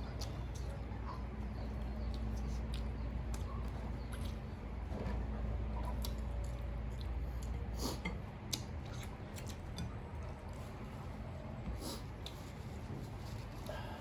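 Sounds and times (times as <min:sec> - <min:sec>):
steady low hum: 0:00.0 - 0:14.0
wet chewing and lip smacks: 0:01.7 - 0:04.6, 0:05.8 - 0:07.7, 0:08.4 - 0:10.6.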